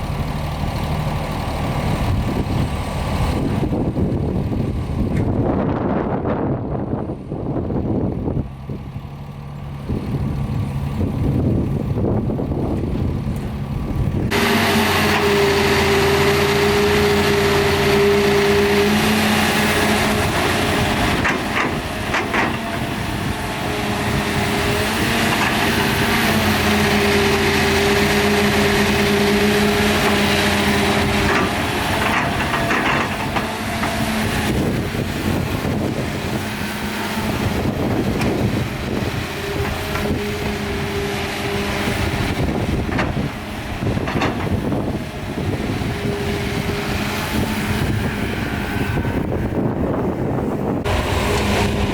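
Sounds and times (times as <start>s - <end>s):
excavator running: 0.0s - 51.9s
steady machine whine: 14.1s - 51.9s.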